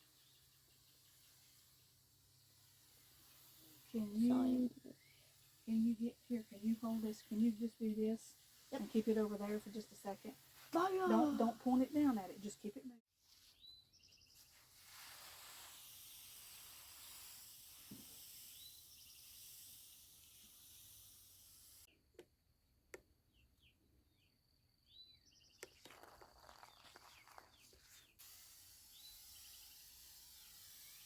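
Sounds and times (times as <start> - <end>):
water mist sprayer hissing: 0.0 - 12.8, 14.5 - 21.9, 26.0 - 31.0
faint bird chirps: 3.8 - 8.2, 23.2 - 28.2.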